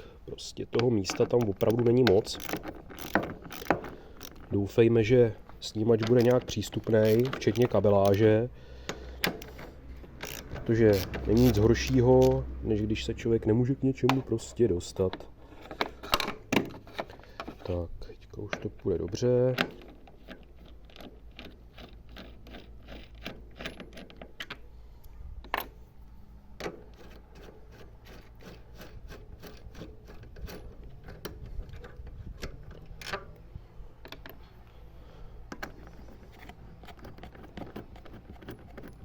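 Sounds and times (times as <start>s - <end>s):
sharp clicks and knocks: 0.6s - 4.8s, 5.4s - 12.4s, 14.0s - 17.8s, 18.4s - 24.7s, 26.6s - 33.4s, 34.0s - 34.4s, 35.4s - 39.0s
ratchet wrench clicking: 1.6s - 4.5s, 6.1s - 8.3s, 8.9s - 12.4s.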